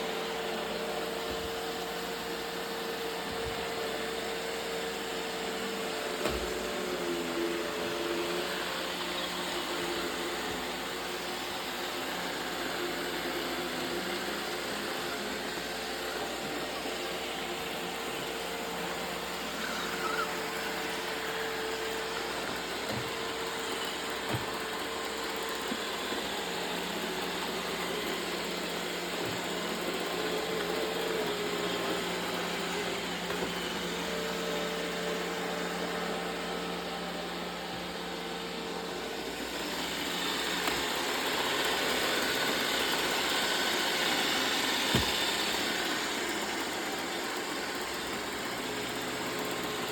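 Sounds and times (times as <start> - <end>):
robot vacuum whirring: 0.0 - 49.9.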